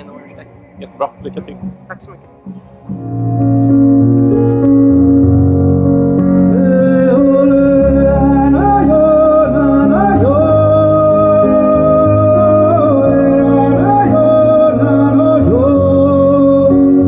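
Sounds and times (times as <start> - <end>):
bass line: 0.0 - 17.0
person singing long notes: 6.1 - 17.0.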